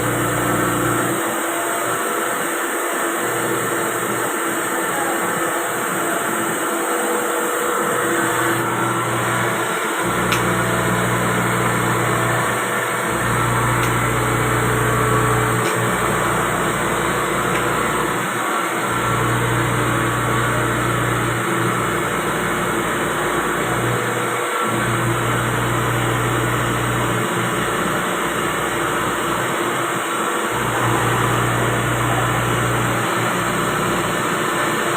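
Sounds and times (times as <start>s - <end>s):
machine hum and whir: 0.0s - 34.9s
low machine drone: 8.0s - 29.4s.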